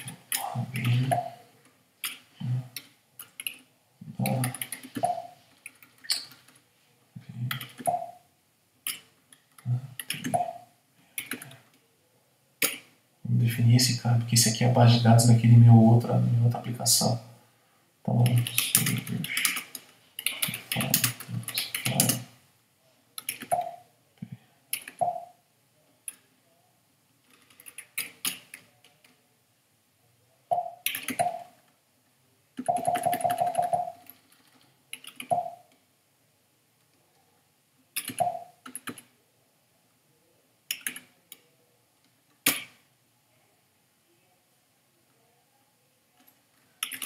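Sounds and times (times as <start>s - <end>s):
typing on computer keyboard: 4.2s - 6.6s, 11.2s - 11.6s, 18.2s - 22.2s, 23.2s - 23.8s, 27.3s - 29.0s, 30.5s - 31.6s, 32.6s - 35.7s, 38.0s - 39.1s, 40.7s - 41.4s, 46.2s - 47.0s.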